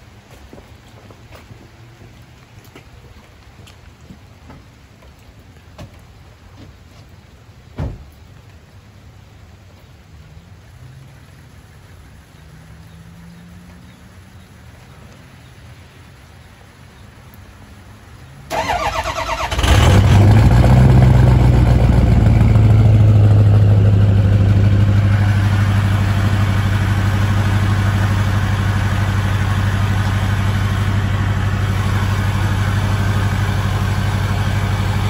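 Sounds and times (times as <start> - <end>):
diesel engine idling: 18.5 - 35.0.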